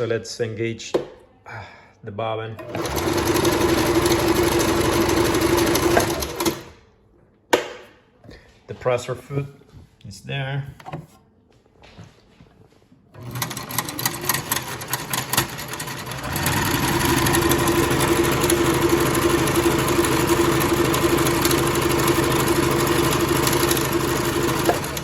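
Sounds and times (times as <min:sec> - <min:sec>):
sewing machine running: 0:02.6 - 0:06.8, 0:13.1 - 0:25.0.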